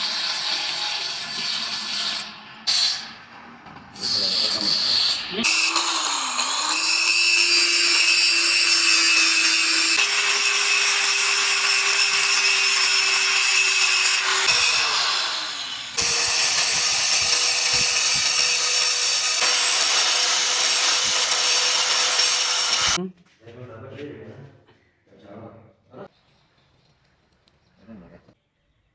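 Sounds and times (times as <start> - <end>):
power tool grinding metal: 4.0 - 23.0.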